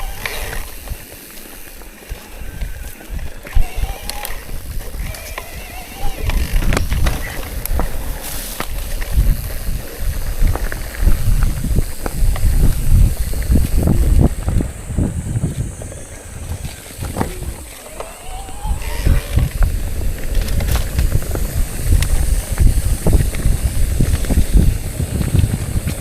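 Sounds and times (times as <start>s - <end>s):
wind rumbling on microphone: 0.0s - 26.0s
bicycle knocks and rattles: 16.6s - 26.0s.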